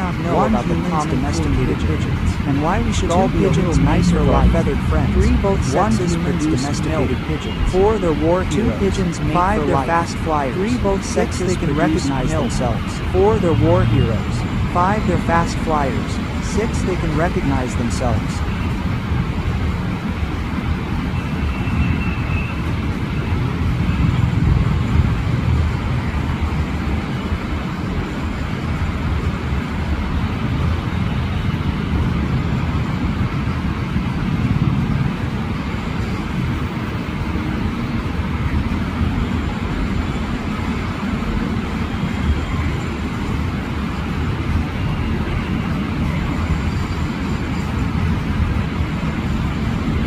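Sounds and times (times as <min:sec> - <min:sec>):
road traffic rumble: 0:00.0 - 0:50.0.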